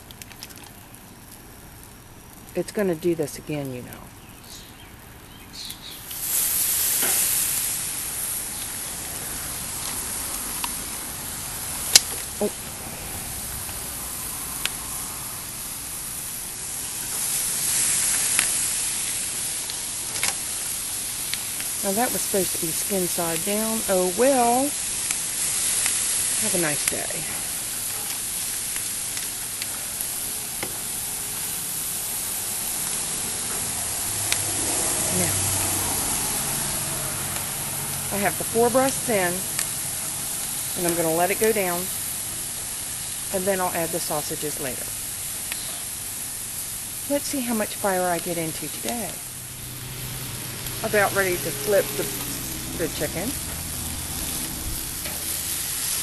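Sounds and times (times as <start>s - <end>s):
chicken sizzling on a grill: 0.0s - 3.4s, 4.2s - 56.0s
sharp pops: 5.6s - 9.2s.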